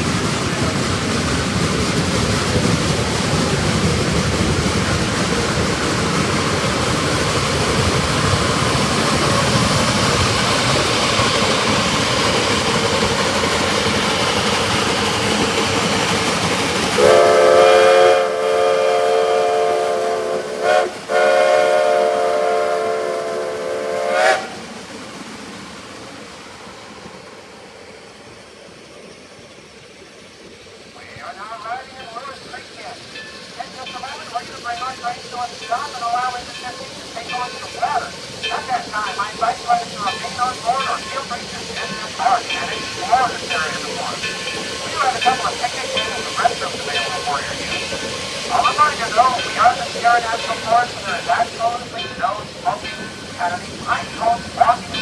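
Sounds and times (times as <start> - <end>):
steam locomotive working hard: 0.0 - 55.0
steam chime whistle: 16.9 - 24.7, 31.6 - 55.0.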